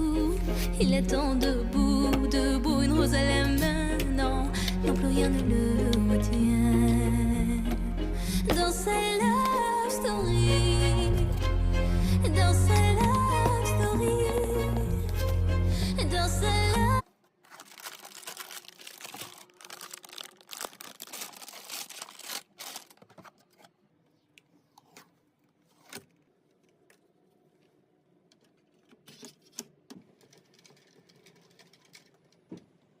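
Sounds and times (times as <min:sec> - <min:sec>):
crinkling handling noises: 0:17.0 - 0:32.6.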